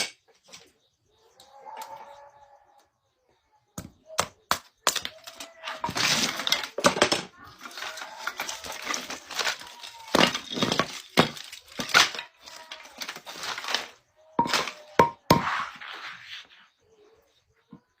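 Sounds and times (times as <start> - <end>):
firewood cracking and knocking: 3.8 - 15.4.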